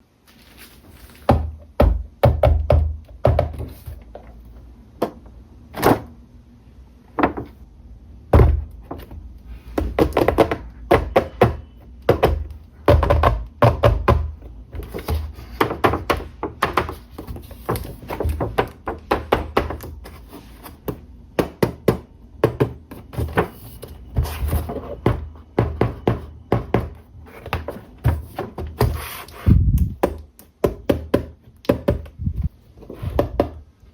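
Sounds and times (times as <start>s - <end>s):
plastic toys knocking and tapping: 1.2s - 4.4s, 8.3s - 20.2s, 20.8s - 29.0s, 29.8s - 32.2s, 33.0s - 33.7s.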